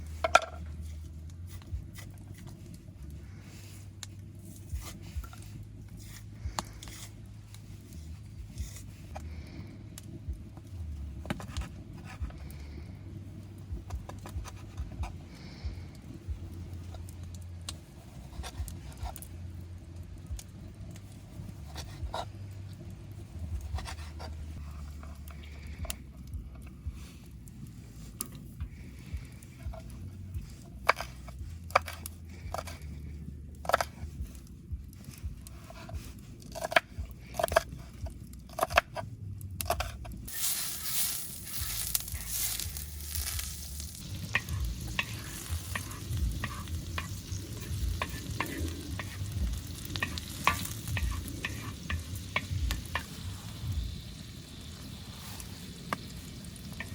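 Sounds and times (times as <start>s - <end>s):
food sizzling in hot pan: 40.3s - 56.9s.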